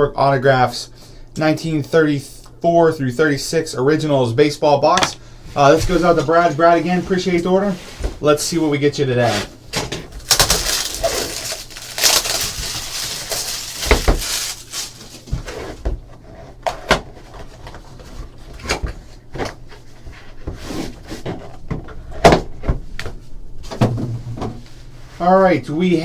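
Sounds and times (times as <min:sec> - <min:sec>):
plastic wrap crinkling and tearing: 0:10.1 - 0:15.4.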